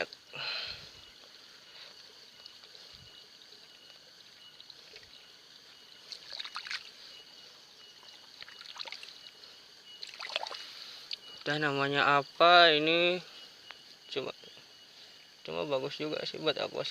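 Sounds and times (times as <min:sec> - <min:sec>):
shallow water trickling and splashing: 0:00.0 - 0:11.5
faint high-pitched hum: 0:00.0 - 0:16.9.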